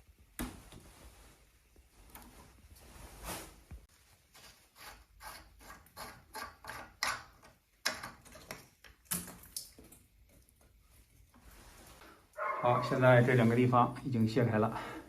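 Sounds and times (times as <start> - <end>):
tool clicking and scraping on metal: 4.8 - 8.5.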